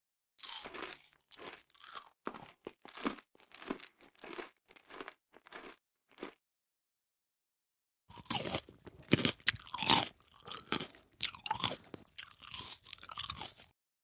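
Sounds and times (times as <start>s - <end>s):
person chewing crunchy food: 0.4s - 6.4s, 8.1s - 13.8s.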